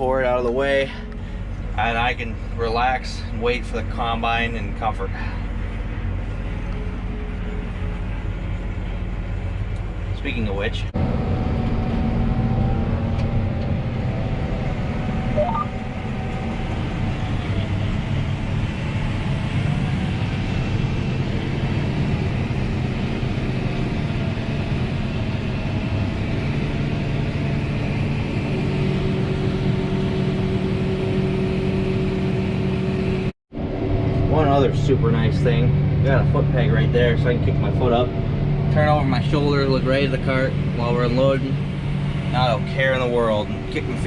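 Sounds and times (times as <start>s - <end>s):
tractor diesel engine running: 12.4s - 44.0s
short rising chirp: 15.3s - 15.8s.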